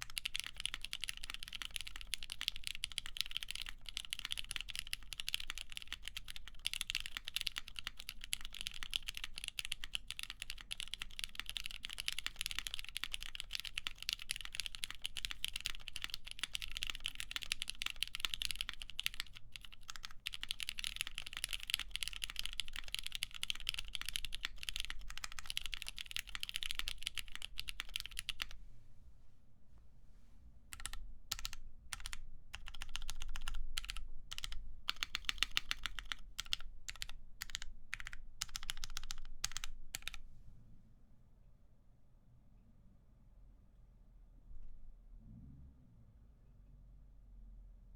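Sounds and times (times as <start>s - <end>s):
typing on mechanical keyboard: 0.0s - 28.6s, 30.7s - 40.2s.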